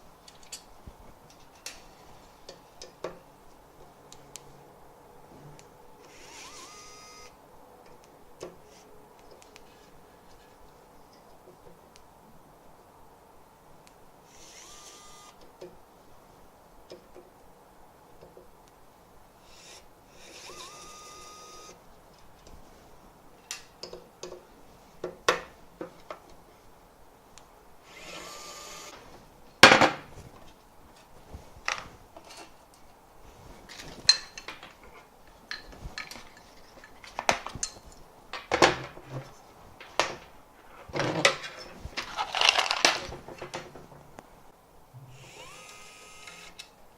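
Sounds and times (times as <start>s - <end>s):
electric screwdriver motor whirring: 6.1s - 7.3s, 14.3s - 15.4s, 19.5s - 21.7s, 27.9s - 29.0s, 45.2s - 46.7s
plastic parts and screws clicking: 41.0s - 43.7s.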